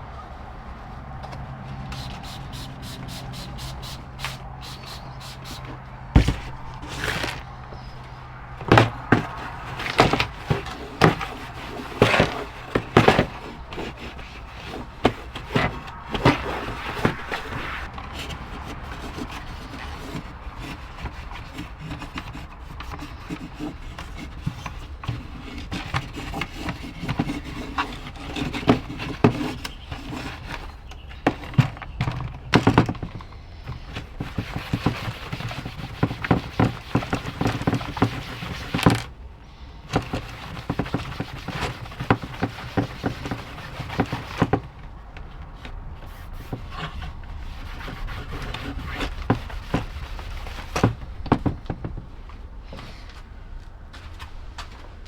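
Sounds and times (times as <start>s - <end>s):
steady rubbing: 1.6s - 30.9s, 39.9s - 52.9s
sharp knocks and taps on plastic: 50.8s - 52.1s.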